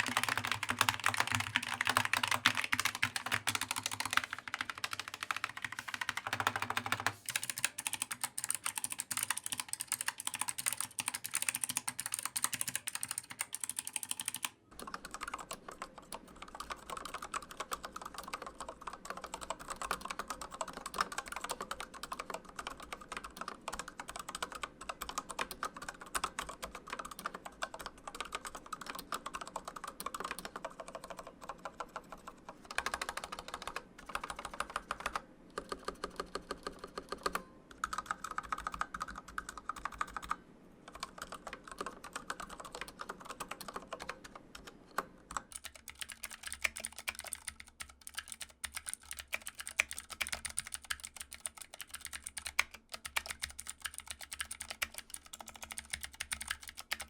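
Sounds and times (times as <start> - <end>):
mechanical keyboard typing: 0.0 - 57.0.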